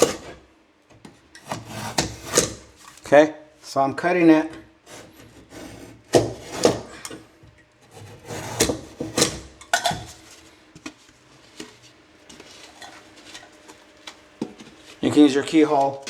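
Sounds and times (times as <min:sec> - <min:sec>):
blade scraping through drywall: 0:00.0 - 0:00.4, 0:01.3 - 0:03.0, 0:04.8 - 0:07.2, 0:07.8 - 0:09.6.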